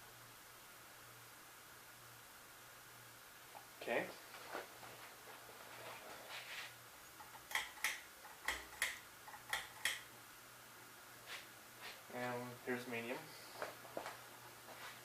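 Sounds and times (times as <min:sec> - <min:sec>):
ceiling fan motor hum: 0:00.0 - 0:15.0
sharp clicks: 0:07.2 - 0:10.1.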